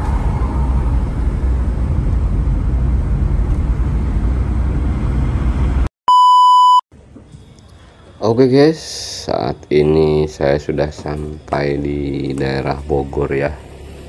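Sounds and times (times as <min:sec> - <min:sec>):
short electronic beep: 0:06.1 - 0:06.8.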